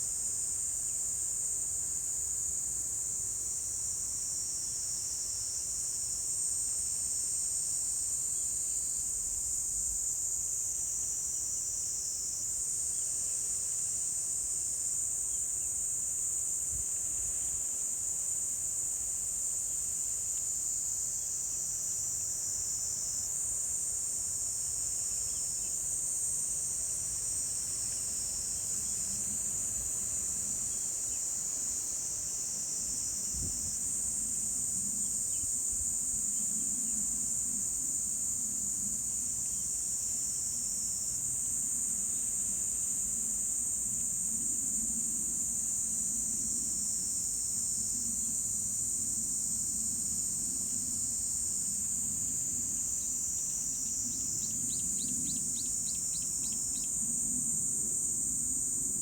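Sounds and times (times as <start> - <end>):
insects trilling: 47.6 - 59.0.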